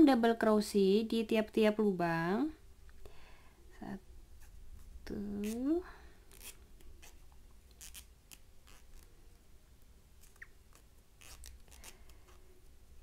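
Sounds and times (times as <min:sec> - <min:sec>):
low steady hum: 0:00.0 - 0:13.0
crochet hook scratching yarn: 0:04.4 - 0:09.1, 0:10.2 - 0:12.6.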